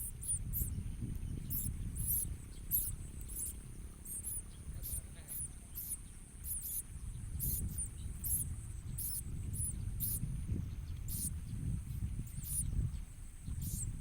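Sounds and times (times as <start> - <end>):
chicks begging chirps: 1.5 - 6.8, 7.4 - 10.2, 12.3 - 12.7, 13.6 - 13.9.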